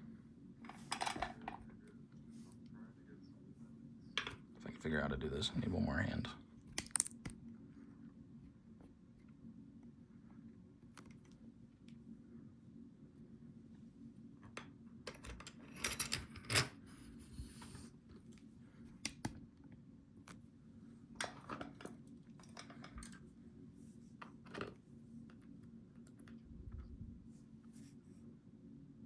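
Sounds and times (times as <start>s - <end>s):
steady low hum: 1.6s - 15.0s, 24.8s - 29.0s
small metal parts clicking: 6.8s - 7.3s.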